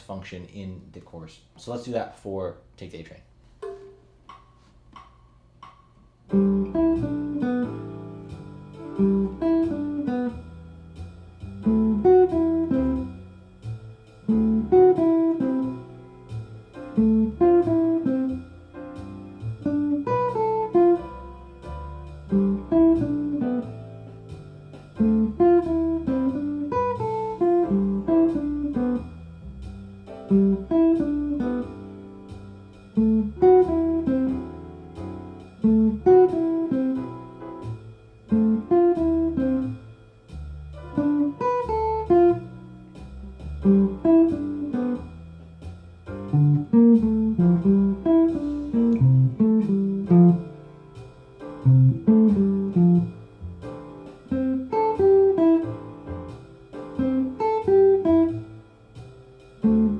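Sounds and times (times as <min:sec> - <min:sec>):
backing track with bass: 0:03.6 - 0:59.9
jazz guitar arpeggios: 0:06.3 - 0:59.9.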